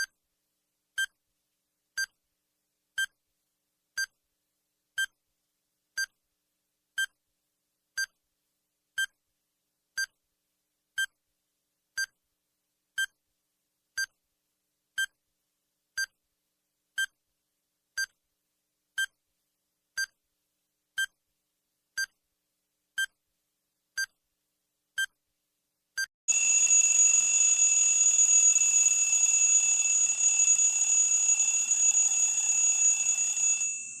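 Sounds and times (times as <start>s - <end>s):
loud continuous alarm ringing: 26.3s - 34.0s
short high timer beeps: 26.3s - 34.0s.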